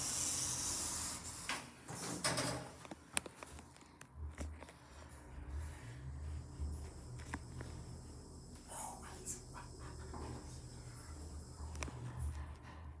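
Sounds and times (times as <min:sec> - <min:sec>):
low hum: 0:04.0 - 0:13.0.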